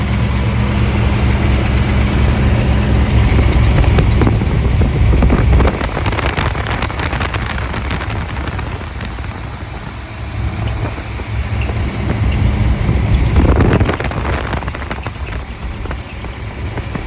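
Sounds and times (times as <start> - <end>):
engine running: 0.0 - 17.0
belt chirping squeal: 9.9 - 13.5, 14.7 - 17.0.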